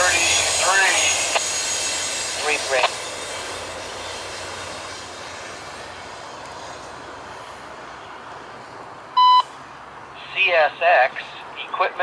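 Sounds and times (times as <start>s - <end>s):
train wheels rumbling on rails: 0.0s - 9.2s.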